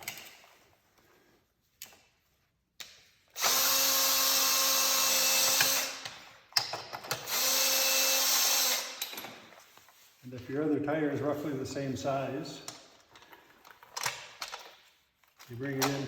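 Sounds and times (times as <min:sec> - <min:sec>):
power drill running: 0:03.4 - 0:06.0, 0:07.2 - 0:09.0.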